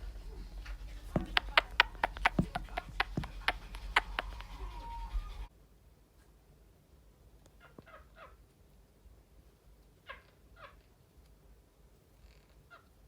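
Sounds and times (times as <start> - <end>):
parrot chirping: 0.3 - 5.5.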